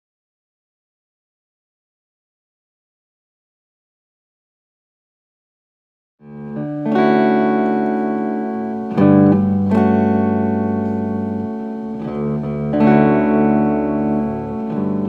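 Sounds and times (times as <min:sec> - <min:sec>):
guitar chords ringing: 0:06.2 - 0:15.0.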